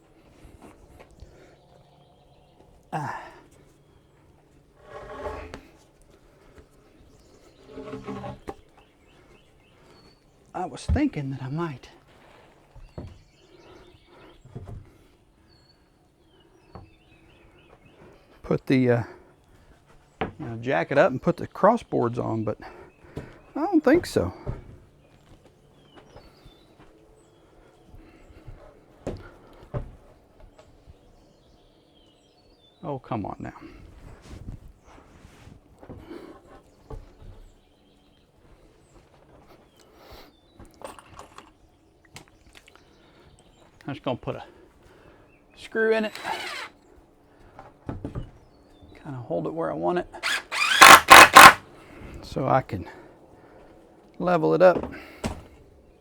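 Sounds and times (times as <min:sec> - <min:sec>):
knocks and scrapes on wood: 0:04.7 - 0:05.9, 0:07.5 - 0:08.9.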